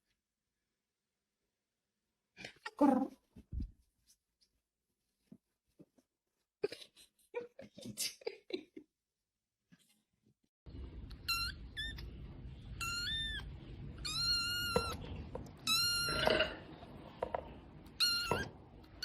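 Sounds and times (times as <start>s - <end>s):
low background hum: 10.7s - 19.0s
cat meowing: 11.1s - 12.1s, 12.7s - 16.6s, 17.8s - 19.0s.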